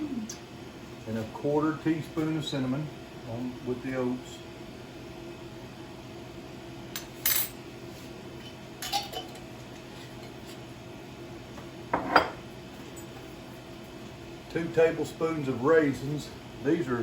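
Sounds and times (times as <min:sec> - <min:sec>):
steady low hum: 0:00.0 - 0:17.0
utensils clinking against jars: 0:08.8 - 0:09.4.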